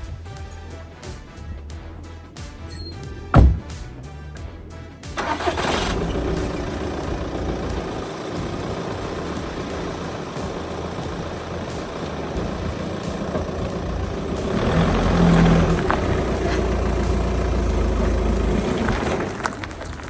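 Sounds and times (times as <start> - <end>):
diesel engine droning: 5.2 - 20.0.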